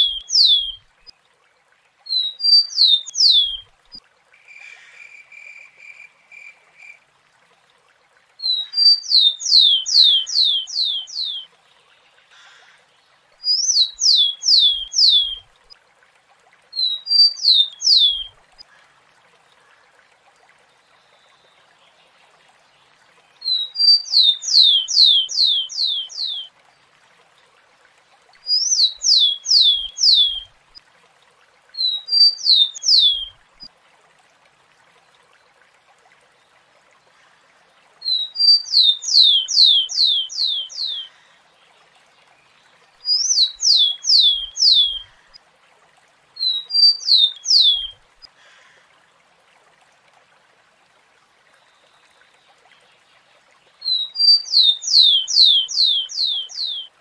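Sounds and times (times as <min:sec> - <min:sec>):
sparrow singing whistles: 0:00.0 - 0:00.8, 0:13.5 - 0:15.4, 0:16.8 - 0:18.3, 0:23.5 - 0:26.5, 0:28.5 - 0:30.4, 0:31.8 - 0:33.3, 0:43.1 - 0:45.0, 0:46.4 - 0:47.9, 0:53.8 - 0:56.9.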